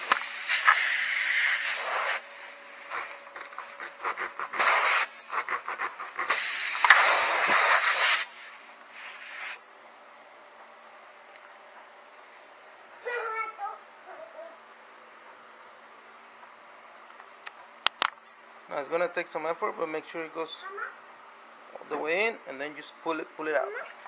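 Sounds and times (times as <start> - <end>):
reamer tool rasping in tire: 0.0 - 9.6.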